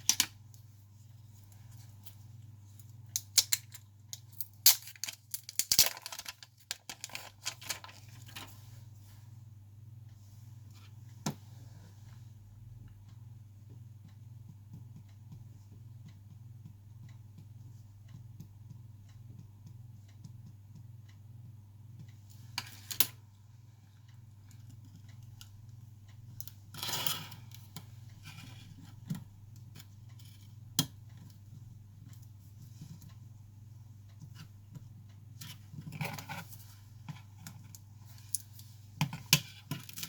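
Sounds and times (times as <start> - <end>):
low electrical hum: 0.0 - 40.0
tools and phone parts clicking: 3.2 - 7.8.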